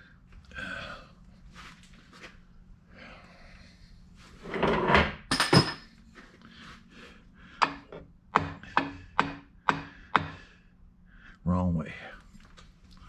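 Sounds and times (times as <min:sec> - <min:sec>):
hammer tapping metal: 0:07.6 - 0:10.4.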